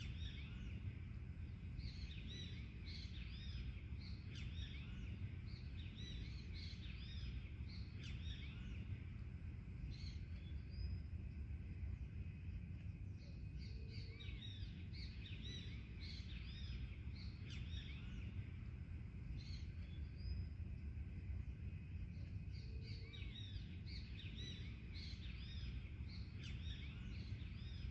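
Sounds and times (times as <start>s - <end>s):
small birds chirping: 0.0s - 27.9s
steady low rumble: 0.0s - 27.9s.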